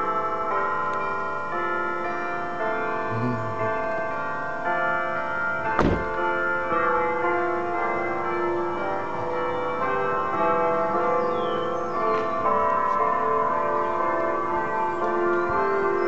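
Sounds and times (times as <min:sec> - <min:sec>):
church bells ringing: 0:00.0 - 0:16.0
sharp knock: 0:05.8 - 0:06.2.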